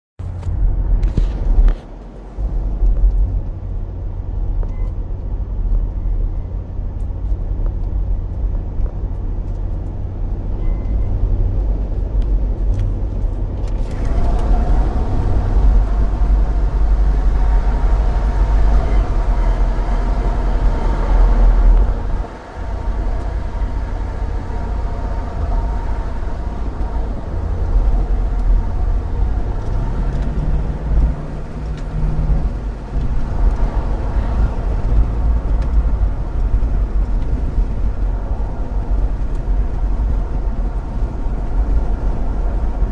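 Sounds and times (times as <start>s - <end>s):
car engine idling: 13.8s - 42.9s.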